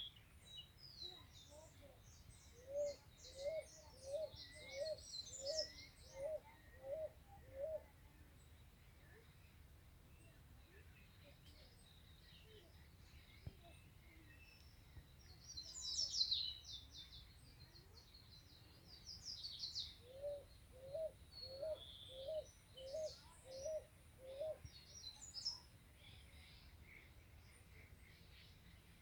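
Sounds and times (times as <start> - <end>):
small birds twittering: 10.1 - 29.0.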